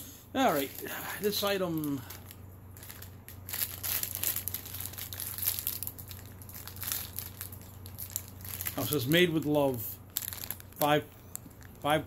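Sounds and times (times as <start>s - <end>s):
packaging crinkling: 0.5s - 12.0s.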